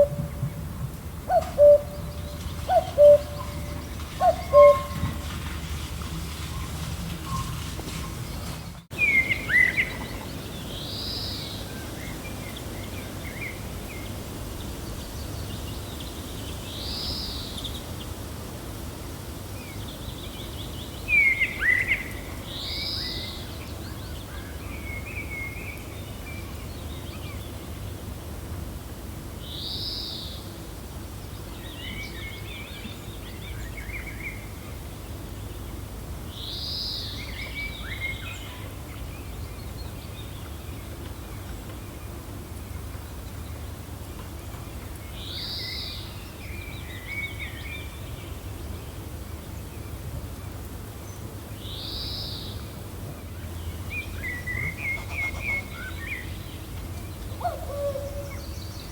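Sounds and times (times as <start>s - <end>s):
birds calling: 0.0s - 17.8s, 53.4s - 58.9s
gentle wind blowing: 0.0s - 58.9s.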